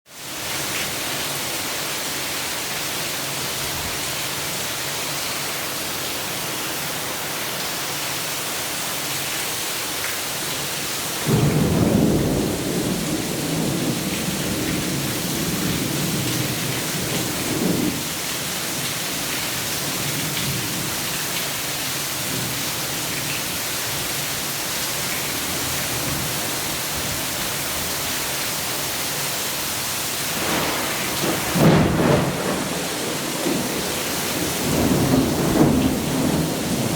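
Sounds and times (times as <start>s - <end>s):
heavy rain: 0.1s - 36.9s
thunder rolling: 11.2s - 18.1s, 30.3s - 36.9s.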